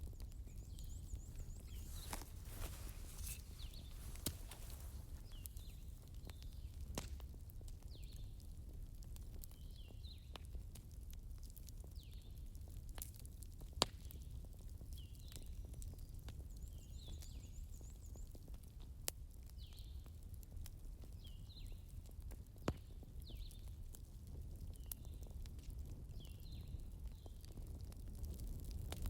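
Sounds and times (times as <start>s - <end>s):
wood fire crackling and popping: 23.6s - 29.0s.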